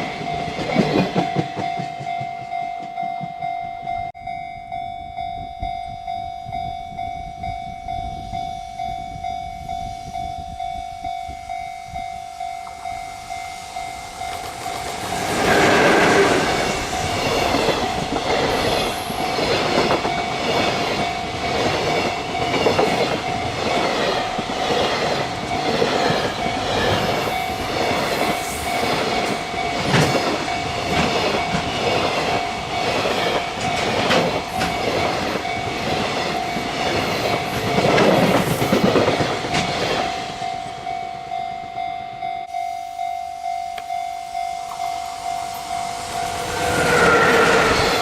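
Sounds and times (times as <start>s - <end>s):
level crossing warning bell: 0.0s - 48.0s
train wheels clacking over rail joints: 14.3s - 40.3s.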